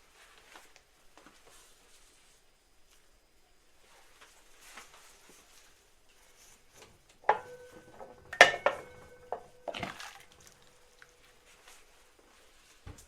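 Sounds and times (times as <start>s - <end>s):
glass jars clinking: 7.3s - 11.3s.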